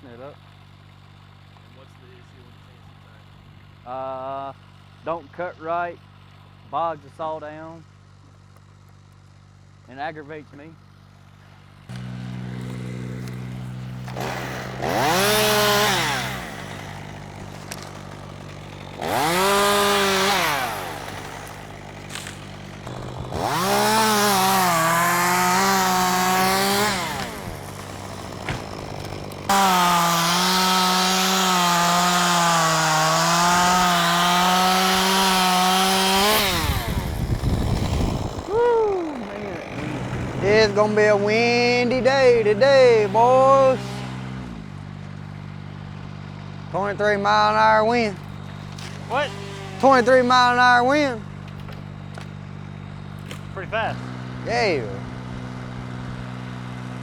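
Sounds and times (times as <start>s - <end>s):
chainsaw idling and revving: 0.0s - 57.0s
chainsaw cutting wood: 0.4s - 5.2s, 10.8s - 57.0s.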